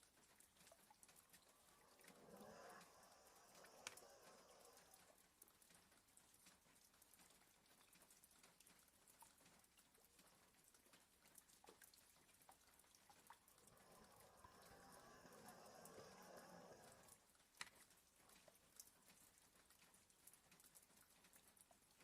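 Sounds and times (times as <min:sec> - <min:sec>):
low hiss: 0:00.0 - 0:06.9, 0:13.2 - 0:17.6
light rain: 0:00.0 - 0:22.0.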